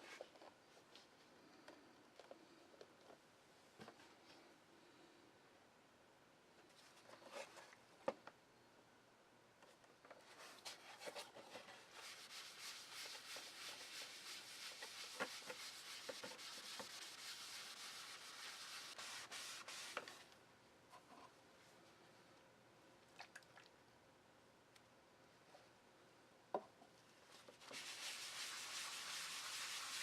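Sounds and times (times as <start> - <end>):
rubbing strokes on leather: 11.9 - 20.0, 27.7 - 30.0.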